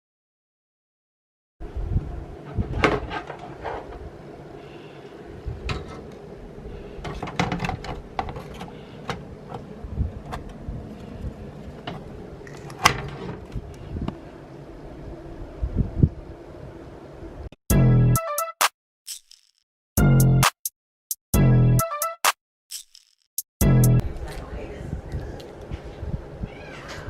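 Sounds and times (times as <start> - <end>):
steady low hum: 1.6 - 17.6.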